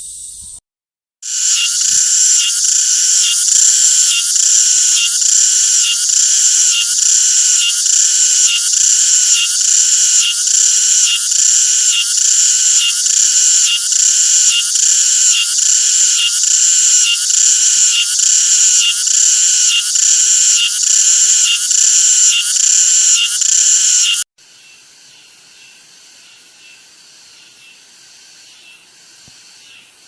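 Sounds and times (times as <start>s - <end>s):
cicada buzzing: 1.2s - 24.3s.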